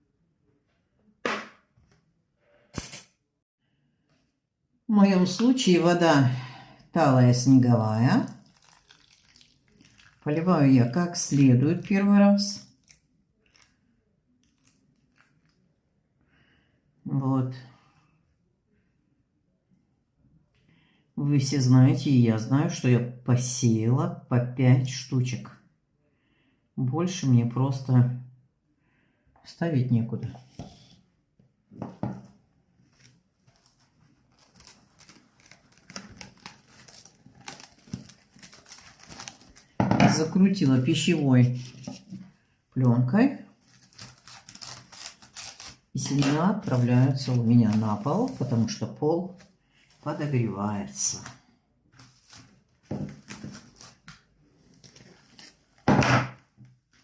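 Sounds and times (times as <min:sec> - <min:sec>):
cling film crinkling: 0:08.2 - 0:10.4, 0:32.8 - 0:39.8, 0:43.6 - 0:48.8
containers clattering and knocking: 0:39.8 - 0:40.4.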